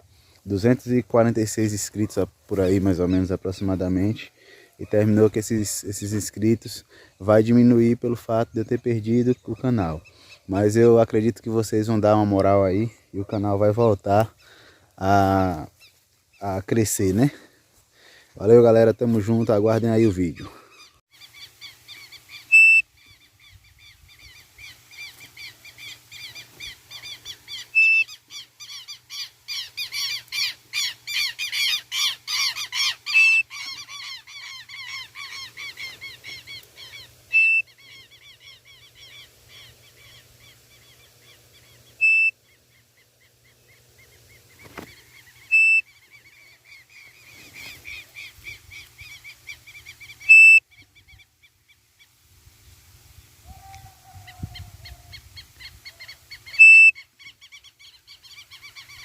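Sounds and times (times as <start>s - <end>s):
small birds chirping: 0.2s - 52.2s, 53.2s - 59.0s
loud whistled bird call: 20.9s - 24.7s, 27.0s - 42.6s, 45.4s - 47.0s, 47.6s - 51.2s, 53.4s - 59.0s.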